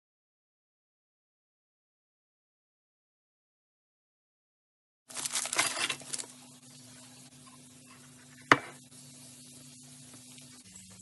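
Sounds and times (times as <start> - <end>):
crackling and rustling: 5.1 - 6.4
faint steady hum: 5.1 - 11.0.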